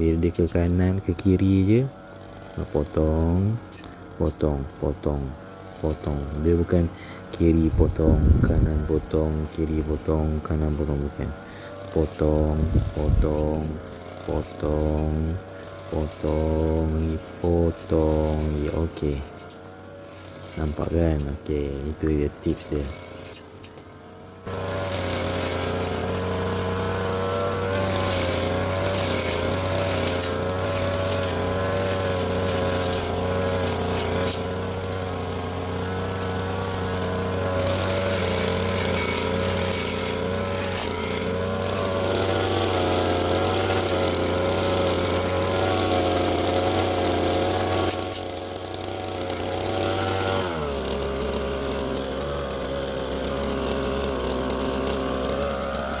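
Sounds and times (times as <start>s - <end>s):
brush cutter engine at high revs: 0.0s - 56.0s.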